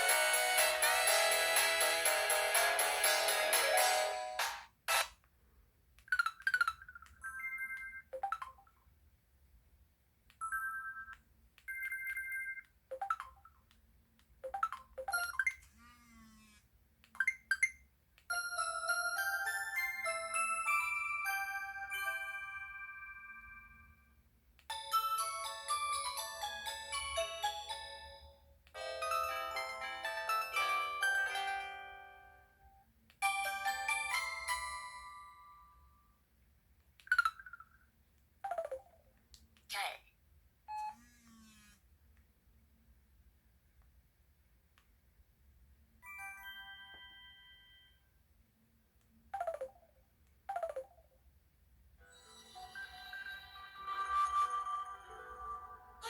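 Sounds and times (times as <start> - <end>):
phone ringtone bell-like notes: 6.2 - 8.6, 10.4 - 11.1, 17.2 - 24.0, 24.7 - 32.4, 33.2 - 35.9, 38.5 - 38.9, 46.0 - 48.1, 49.4 - 49.9, 50.5 - 51.0
phone melody: 24.7 - 32.4, 38.5 - 39.0, 49.4 - 49.9, 50.5 - 51.0
phone electronic beeps: 38.5 - 38.9, 49.4 - 49.9, 50.5 - 51.0
electronic chirps: 49.4 - 49.9, 50.5 - 51.0.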